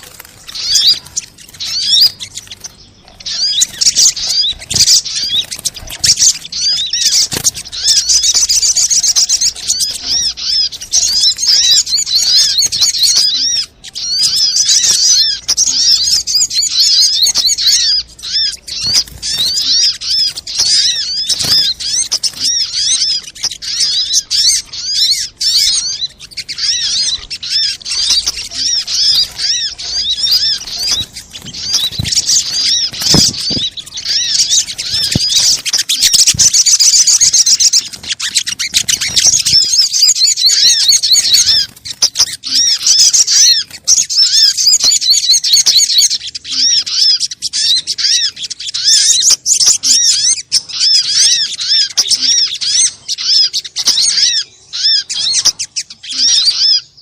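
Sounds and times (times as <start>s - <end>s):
sunbird chirping song: 0.0s - 57.0s.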